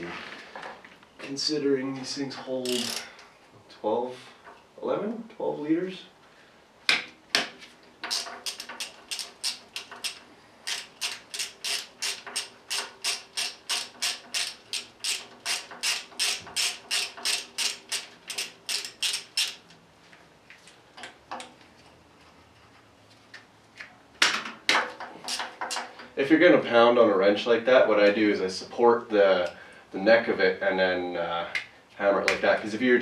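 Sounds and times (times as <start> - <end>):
sharp metallic ratchet clicks: 2.6 - 3.1, 8.0 - 19.7, 25.3 - 26.0.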